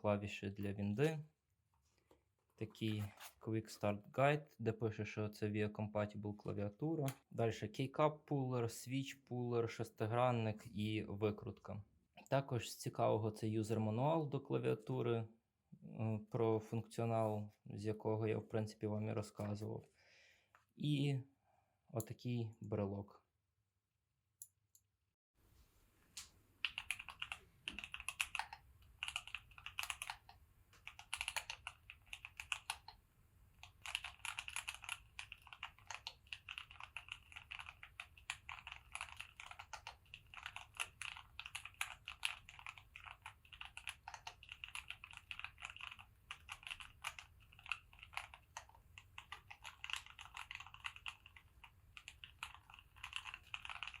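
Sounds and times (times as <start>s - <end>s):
fast typing on mechanical keyboard: 26.6s - 54.0s.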